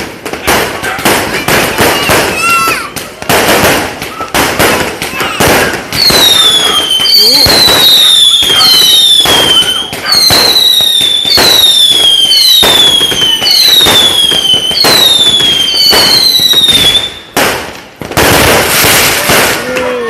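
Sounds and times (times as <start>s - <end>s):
firework bangs: 0.0s - 20.0s
firework crackling: 0.0s - 20.0s
firework whistles: 1.4s - 17.4s.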